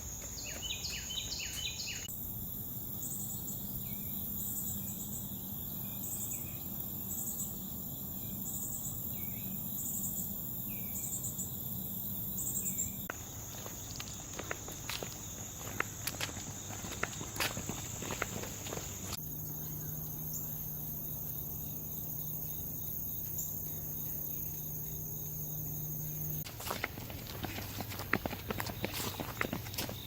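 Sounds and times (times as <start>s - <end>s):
footsteps on a trail: 0.0s - 2.0s, 13.1s - 19.2s, 26.4s - 30.0s
insect pulsed chirps: 0.0s - 26.5s
insect high-pitched drone: 0.0s - 26.8s.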